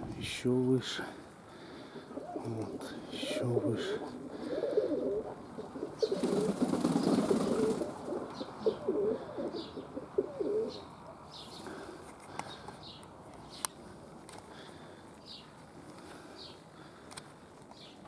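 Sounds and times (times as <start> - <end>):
pigeons cooing: 1.5 - 12.0
small birds chirping: 1.5 - 18.0.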